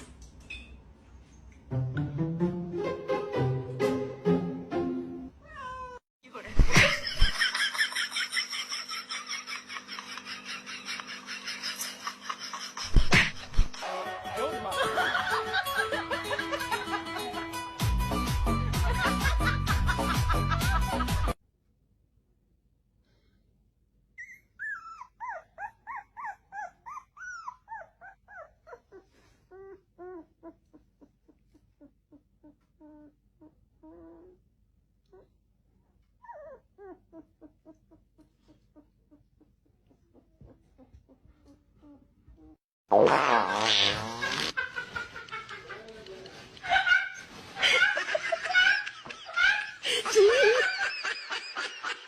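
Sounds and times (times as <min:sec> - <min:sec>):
dog whining and yipping: 0:24.2 - 0:34.4, 0:36.2 - 0:39.5.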